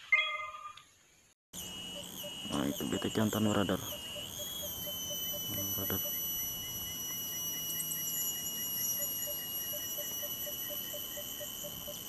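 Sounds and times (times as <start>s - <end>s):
rapid insect chirping: 1.2s - 12.0s
high-pitched insect drone: 1.6s - 12.0s.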